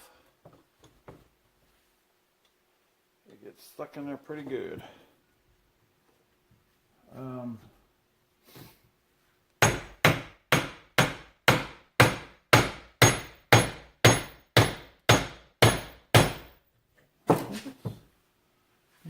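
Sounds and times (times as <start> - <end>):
hammer striking metal: 9.6 - 16.5.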